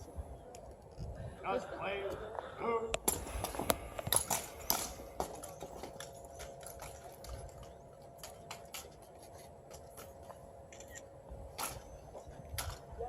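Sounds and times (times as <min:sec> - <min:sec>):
rifles clicking and knocking: 0:02.9 - 0:11.0.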